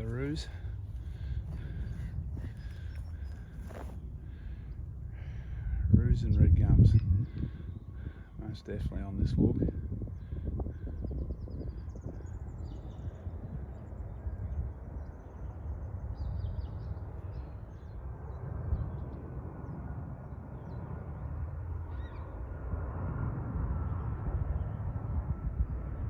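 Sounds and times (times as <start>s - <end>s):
faint bird calls: 0.0s - 5.9s
distant jet aircraft drone: 0.0s - 26.0s
wind rumbling on microphone: 0.0s - 26.0s.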